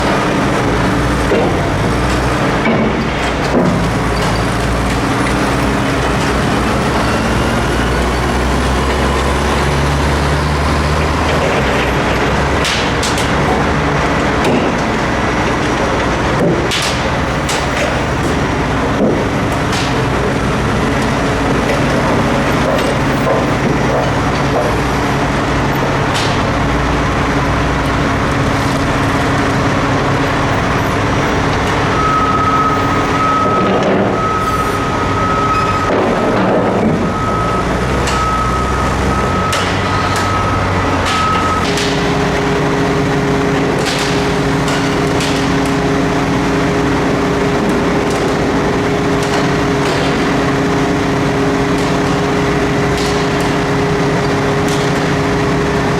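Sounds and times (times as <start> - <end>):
diesel engine running: 0.0 - 55.9
warning beeper: 31.8 - 41.8.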